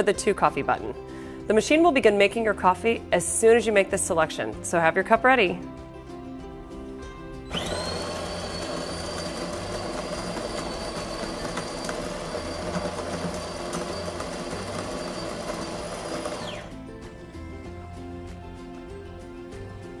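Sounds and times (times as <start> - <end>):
soft background music: 0.0 - 20.0
coffee grinder motor whine: 7.5 - 16.8.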